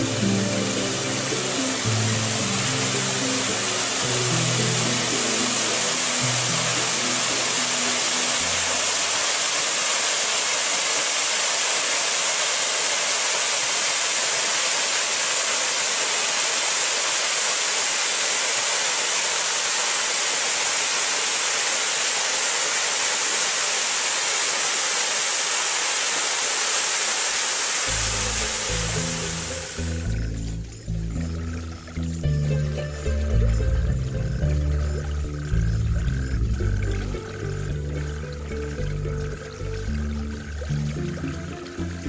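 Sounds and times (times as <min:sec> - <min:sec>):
waterfall rushing: 0:00.0 - 0:30.2.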